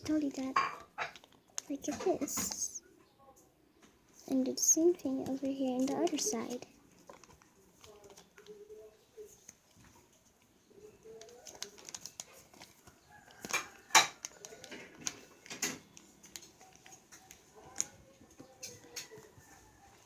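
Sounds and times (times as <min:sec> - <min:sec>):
paper rustling and crackling: 0:04.2 - 0:20.0.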